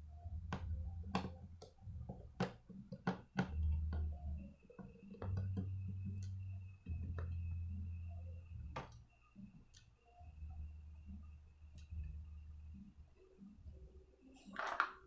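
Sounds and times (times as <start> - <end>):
faint high whine: 3.6 - 14.6.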